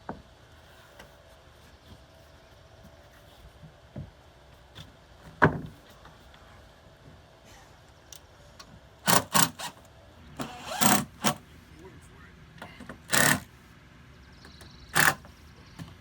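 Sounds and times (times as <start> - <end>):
knocks on decking boards: 5.2 - 5.8.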